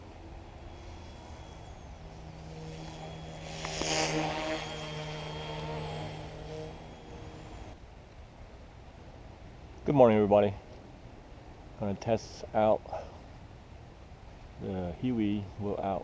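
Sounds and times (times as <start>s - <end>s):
vehicle engine running: 0.0s - 7.8s.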